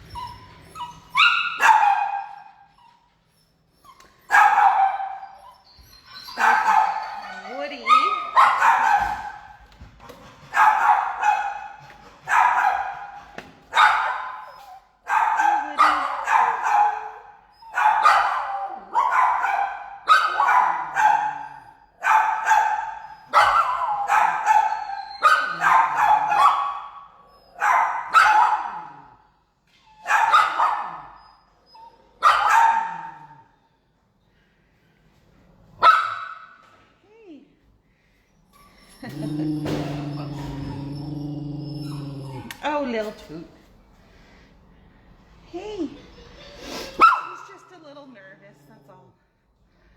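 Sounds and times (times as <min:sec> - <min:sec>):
dog barking: 0:01.2 - 0:02.5, 0:04.3 - 0:05.3, 0:06.4 - 0:07.3, 0:07.9 - 0:09.5, 0:10.5 - 0:14.5, 0:15.1 - 0:27.0, 0:27.6 - 0:29.1, 0:30.1 - 0:31.1, 0:32.2 - 0:33.4, 0:35.8 - 0:36.6, 0:47.0 - 0:47.6.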